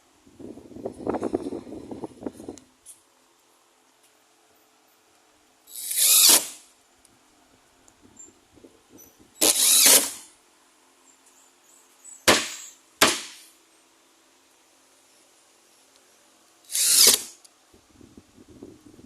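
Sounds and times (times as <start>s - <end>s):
power drill driving screws: 5.7s - 6.6s, 9.4s - 10.3s, 16.7s - 17.4s.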